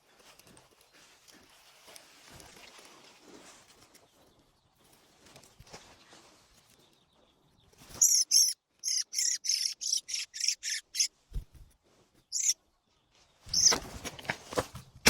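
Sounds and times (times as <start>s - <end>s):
bird sharp high calls: 7.9s - 11.1s, 12.3s - 12.6s, 13.5s - 13.8s.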